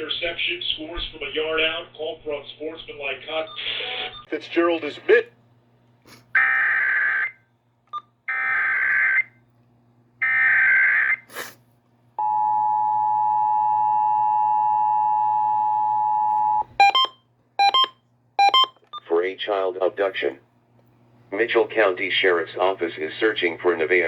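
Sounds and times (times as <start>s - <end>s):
two-tone attention signal: 15.9s - 18.7s.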